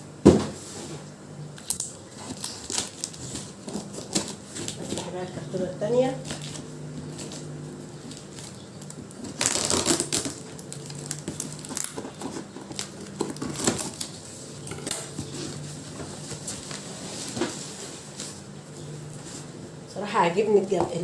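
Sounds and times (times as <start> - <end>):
cardboard rustling and tearing: 1.7 - 5.3, 6.1 - 18.4.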